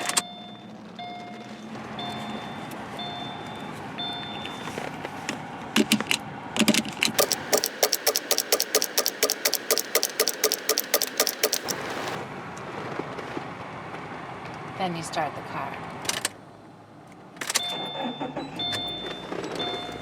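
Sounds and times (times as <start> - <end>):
two-tone seatbelt reminder chime: 7.2 - 11.8.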